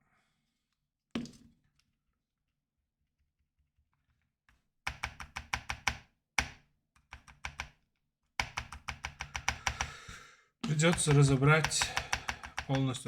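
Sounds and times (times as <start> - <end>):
mechanical keyboard typing: 4.9 - 6.0, 7.1 - 7.7, 8.4 - 9.9, 10.7 - 13.0.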